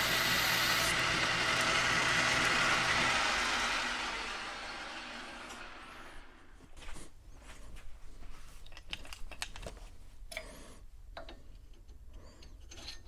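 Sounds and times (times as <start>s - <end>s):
clicks and taps of steel parts: 11.1s - 13.0s.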